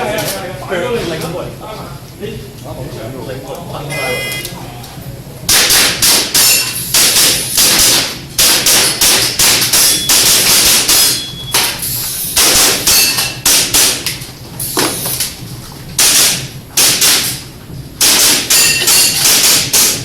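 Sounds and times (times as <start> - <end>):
airsoft pistol shots: 5.5 - 11.2, 12.4 - 14.1, 16.0 - 17.4, 18.0 - 20.0
pellets hitting metal targets: 18.0 - 20.0.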